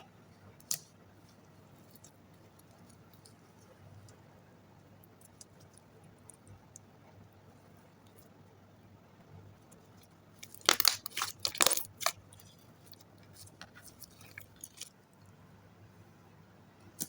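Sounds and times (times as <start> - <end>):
slime squeezed by hand crackling: 10.4 - 12.4.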